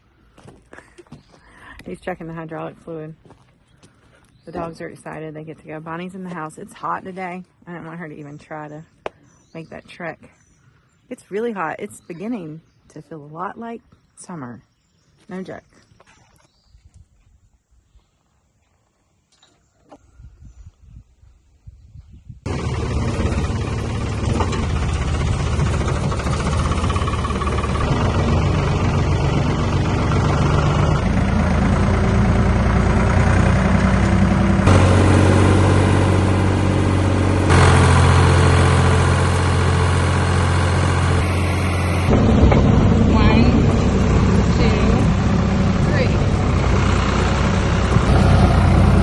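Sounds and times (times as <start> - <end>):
backhoe engine running loud: 22.5 - 49.0.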